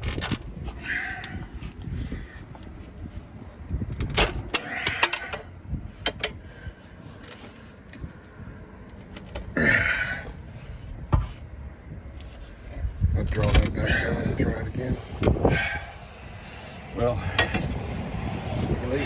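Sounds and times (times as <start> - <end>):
tire irons clanking on steel rim: 3.8 - 18.0.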